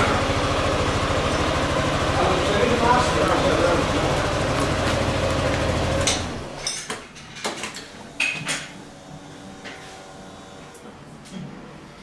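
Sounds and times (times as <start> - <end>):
scooter engine idling: 0.0 - 6.6.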